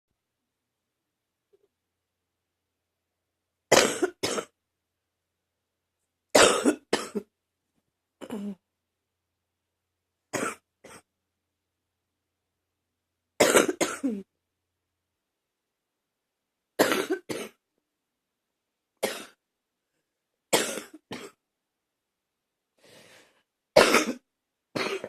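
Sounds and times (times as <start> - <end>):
person coughing: 3.7 - 4.6, 6.4 - 7.3, 8.2 - 8.6, 13.4 - 14.3, 16.8 - 17.6, 19.0 - 19.4, 20.6 - 21.4, 23.8 - 24.2, 24.8 - 25.0.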